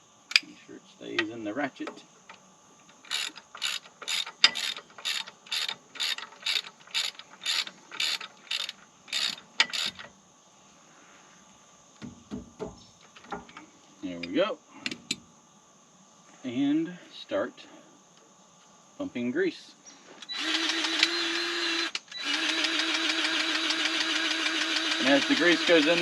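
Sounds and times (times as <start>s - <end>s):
ratchet wrench clicking: 2.9s - 10.1s, 20.2s - 26.0s.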